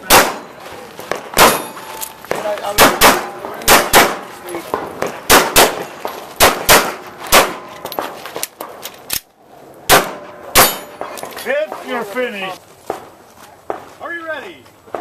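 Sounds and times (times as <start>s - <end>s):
pistol shots: 0.0s - 8.1s, 9.9s - 11.8s.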